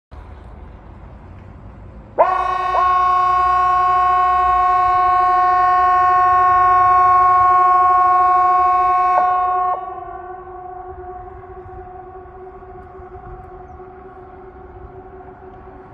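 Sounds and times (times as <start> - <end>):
outdoor warning siren: 2.1 - 15.9
low background rumble: 2.9 - 15.9.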